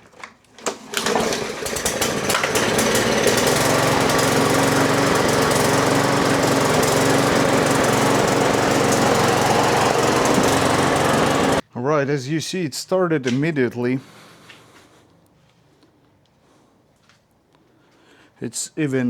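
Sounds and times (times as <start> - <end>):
lawn mower engine running: 0.6 - 11.6.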